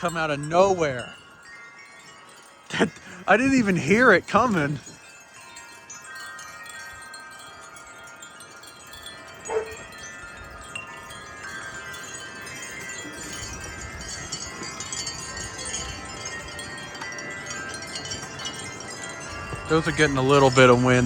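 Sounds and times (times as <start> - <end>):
wind chimes ringing: 0.0 - 21.0
low wind rumble: 8.2 - 21.0.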